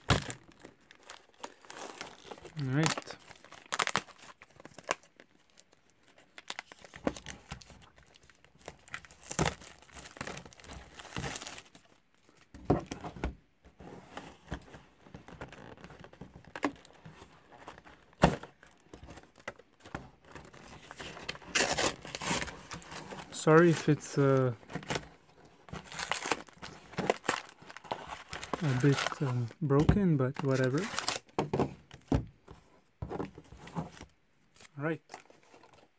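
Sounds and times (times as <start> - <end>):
plastic wrapping tearing: 0.0 - 11.8, 20.8 - 25.1, 25.7 - 31.3
plastic wrapping crinkling: 0.0 - 12.5, 15.2 - 31.4.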